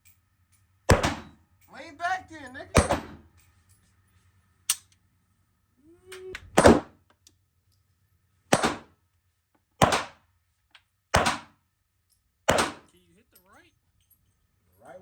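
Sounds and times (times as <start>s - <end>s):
handgun shots with echo: 0.9s - 1.4s, 2.8s - 3.3s, 6.5s - 7.0s, 8.5s - 8.9s, 9.8s - 10.2s, 11.1s - 11.6s, 12.5s - 12.9s.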